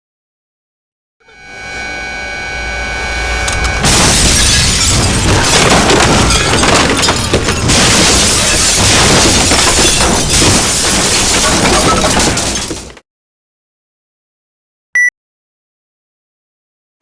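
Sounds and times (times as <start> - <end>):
steady whine: 1.2 - 4.1
crash with shattering glass: 3.8 - 13.0.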